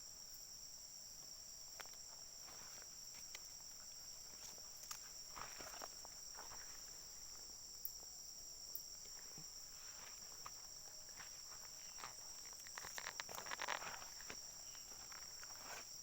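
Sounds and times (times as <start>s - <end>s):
high-pitched insect chorus: 0.0s - 16.0s
faint rustling and clicking: 11.9s - 15.7s.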